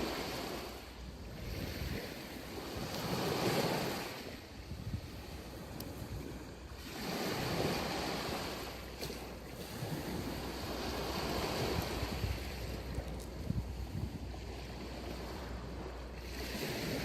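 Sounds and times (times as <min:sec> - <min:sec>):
sea waves breaking on beach: 0:00.0 - 0:17.0
wind rumble on microphone: 0:00.0 - 0:17.0.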